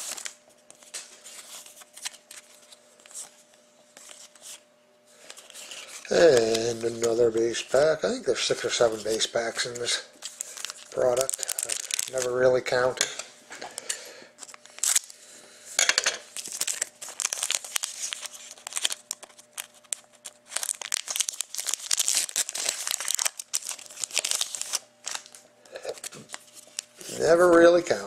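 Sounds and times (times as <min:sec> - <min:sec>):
cards rustling: 0:00.0 - 0:03.4, 0:04.0 - 0:13.0, 0:13.7 - 0:15.2, 0:16.4 - 0:28.0
wrapper tearing and crinkling: 0:05.3 - 0:12.9, 0:14.4 - 0:15.2, 0:16.3 - 0:27.7.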